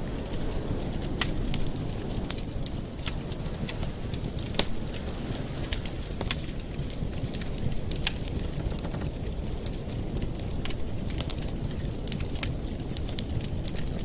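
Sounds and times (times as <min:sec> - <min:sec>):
burning wood crackling and popping: 0:00.0 - 0:14.0
low rumble of flames: 0:00.0 - 0:14.0.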